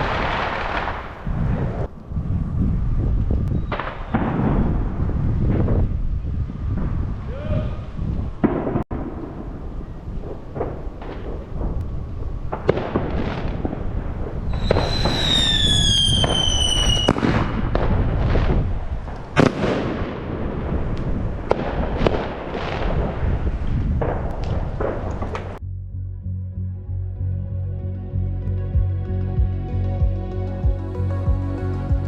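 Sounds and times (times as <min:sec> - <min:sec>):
fireworks bangs: 0:00.0 - 0:07.3, 0:08.3 - 0:25.6
fireworks rumble: 0:00.0 - 0:25.6
firework whistle sliding down: 0:14.5 - 0:17.2.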